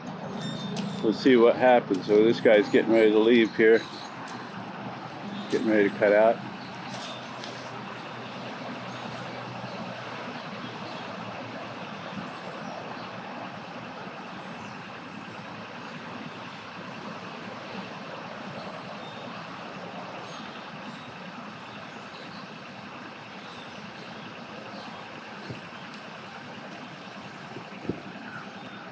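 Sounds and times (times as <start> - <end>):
vehicle engine running: 0.0 - 28.9.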